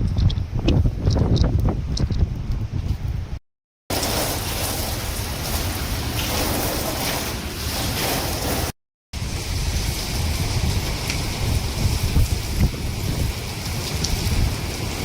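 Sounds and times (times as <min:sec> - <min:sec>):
wind buffeting microphone: 0:00.0 - 0:15.0
crashing surf: 0:03.9 - 0:10.6.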